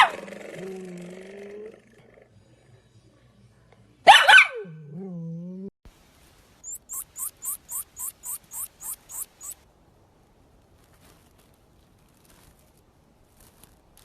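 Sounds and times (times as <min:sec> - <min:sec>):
dog barking: 0:04.0 - 0:04.8
short high chirps: 0:06.6 - 0:09.6.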